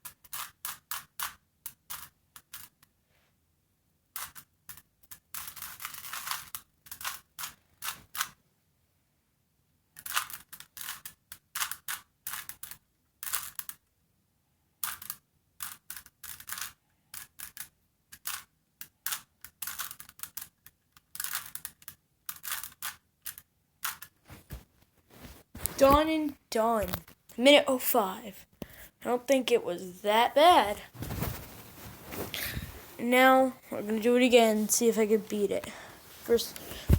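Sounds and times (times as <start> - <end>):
plastic puzzle cube clicking: 0.1 - 2.9, 4.2 - 8.4, 9.9 - 13.9, 14.8 - 24.2.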